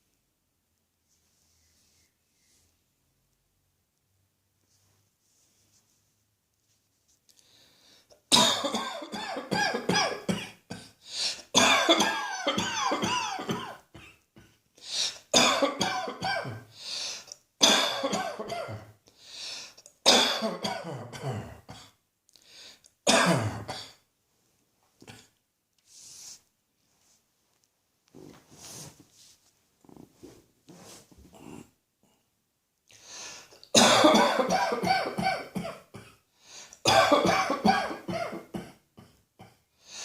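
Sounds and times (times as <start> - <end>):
person coughing: 8.3 - 11.0, 11.6 - 14.6, 15.4 - 16.7, 17.6 - 19.0, 20.1 - 22.0, 23.1 - 24.0, 33.7 - 36.2, 36.8 - 39.6.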